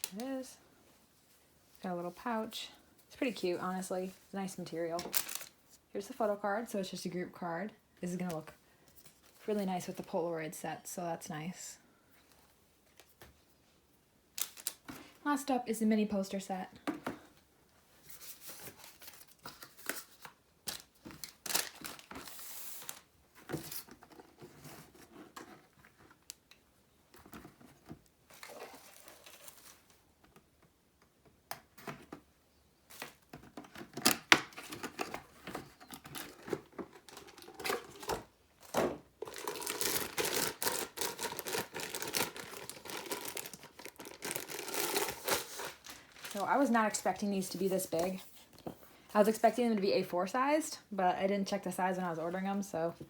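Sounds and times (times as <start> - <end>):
packaging crinkling: 5.1 - 5.5, 14.4 - 14.9, 36.0 - 46.7
packaging rustling and tearing: 5.1 - 5.6, 14.4 - 14.9, 18.5 - 23.1, 33.8 - 47.0.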